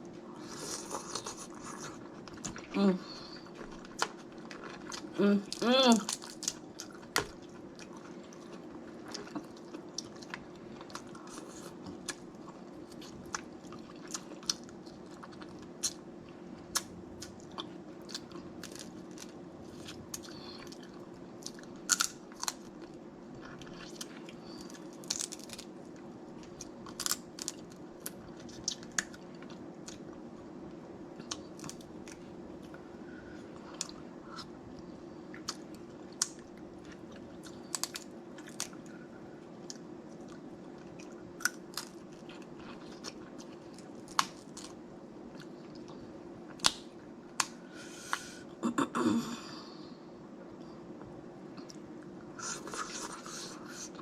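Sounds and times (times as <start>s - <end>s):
steady low hum: 0.0s - 54.0s
crab shell cracking: 25.0s - 25.7s.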